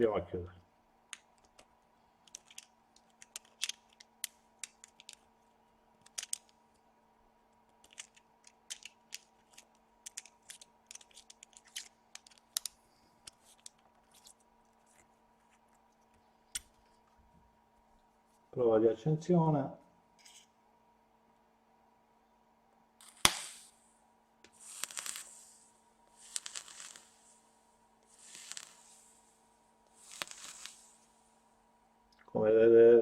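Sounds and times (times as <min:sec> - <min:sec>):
faint steady hum: 0:00.0 - 0:33.0.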